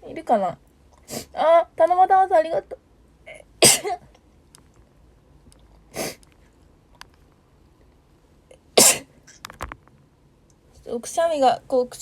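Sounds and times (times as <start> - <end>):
woman sniffing: 1.1 - 1.3, 6.0 - 6.3.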